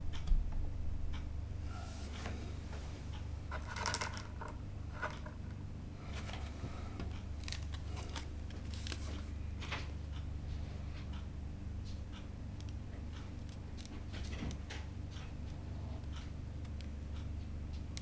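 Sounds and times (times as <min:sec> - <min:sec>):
small clicks and metallic clinks: 0:03.5 - 0:05.6.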